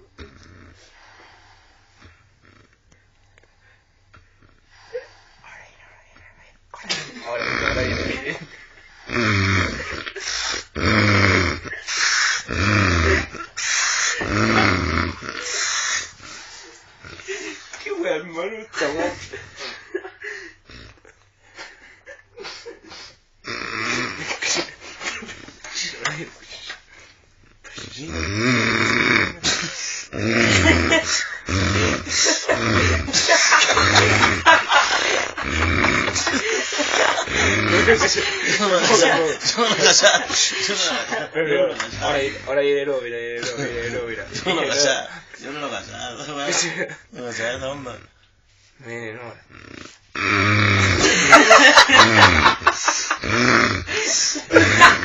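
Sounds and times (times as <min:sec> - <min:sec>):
loud snoring: 0:00.0 - 0:01.4, 0:02.0 - 0:02.8, 0:07.2 - 0:17.6, 0:23.4 - 0:24.3, 0:27.8 - 0:39.0, 0:49.5 - 0:55.0
hissing breaths: 0:00.0 - 0:06.7, 0:08.6 - 0:17.8, 0:19.4 - 0:38.8, 0:52.0 - 0:55.0.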